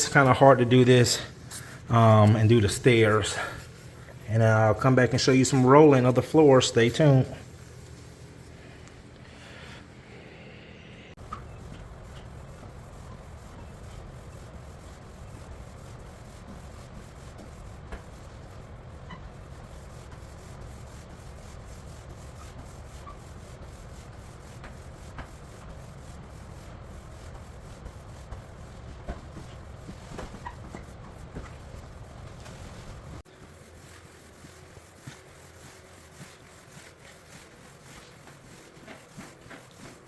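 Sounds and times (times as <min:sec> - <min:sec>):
floor roller rubbing swish: 0:11.4 - 0:40.0.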